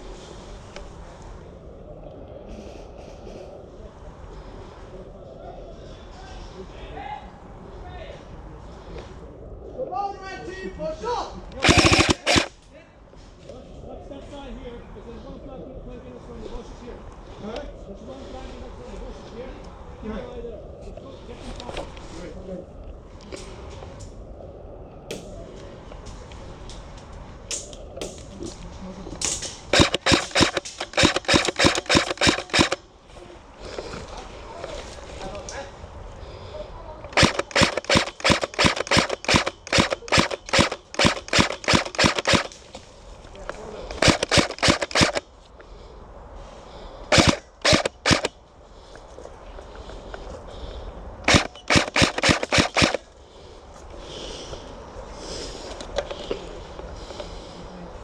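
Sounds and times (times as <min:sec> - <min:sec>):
airsoft rifle firing rapid shots: 0:11.6 - 0:12.6, 0:29.7 - 0:32.8, 0:37.1 - 0:42.6, 0:43.9 - 0:45.2, 0:47.1 - 0:48.3, 0:51.3 - 0:53.1.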